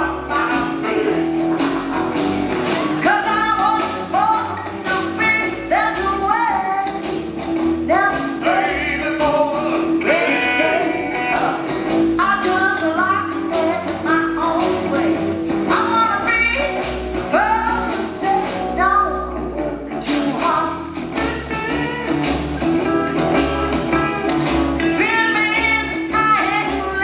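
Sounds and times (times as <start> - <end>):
woman singing: 0.0 - 2.1, 3.0 - 7.1, 7.8 - 21.0, 24.8 - 27.0
live rock band: 0.0 - 27.0.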